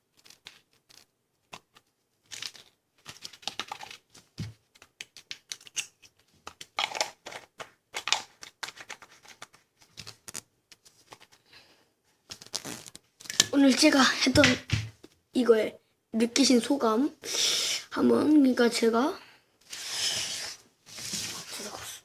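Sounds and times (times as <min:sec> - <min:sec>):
small objects clicking and rustling: 0:00.1 - 0:11.4.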